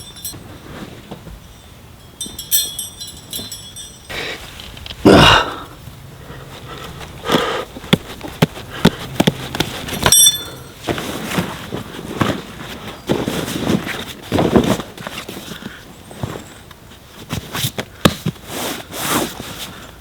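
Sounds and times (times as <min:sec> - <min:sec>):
ringing clink: 0:00.0 - 0:00.6, 0:01.4 - 0:04.3, 0:10.1 - 0:10.8
handling knocks and rustles: 0:00.0 - 0:05.0, 0:06.5 - 0:19.9.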